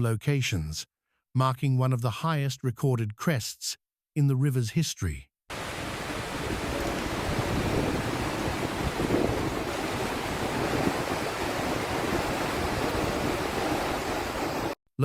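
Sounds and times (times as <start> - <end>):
floodwater rushing: 5.5 - 14.8
wind buffeting microphone: 5.6 - 14.7.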